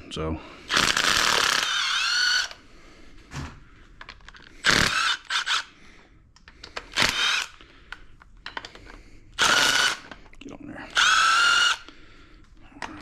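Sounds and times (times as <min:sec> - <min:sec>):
power tool whirring: 0:00.7 - 0:02.6, 0:04.6 - 0:05.7, 0:06.7 - 0:07.7, 0:09.4 - 0:10.2, 0:10.9 - 0:11.9.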